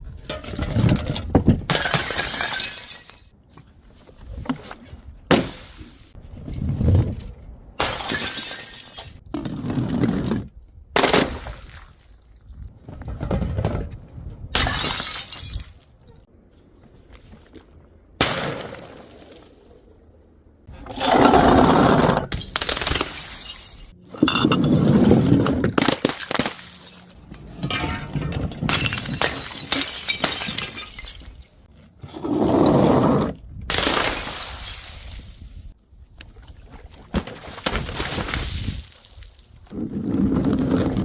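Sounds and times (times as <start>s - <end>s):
glass bottles shattering: 1.7s - 3.3s, 7.8s - 9.2s, 14.6s - 15.9s, 22.3s - 24.8s, 25.8s - 31.7s, 33.7s - 35.4s.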